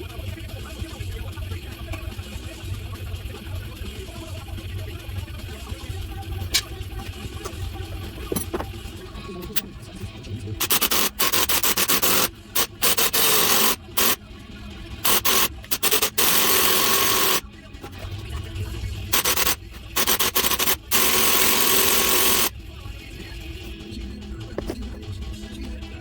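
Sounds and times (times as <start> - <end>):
impact wrench bursts: 10.6 - 14.2, 15.0 - 17.4, 19.1 - 22.5.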